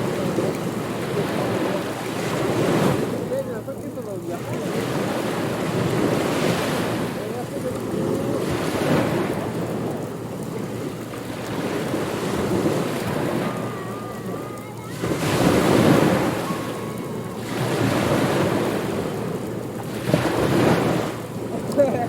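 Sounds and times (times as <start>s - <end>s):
ocean waves washing in: 0.0s - 22.0s
faint wavering whistle-like tones: 13.3s - 17.9s.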